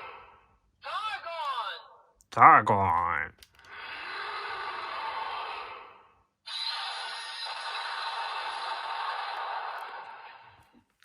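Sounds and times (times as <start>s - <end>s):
toy speaker hissing effect: 6.5s - 8.4s.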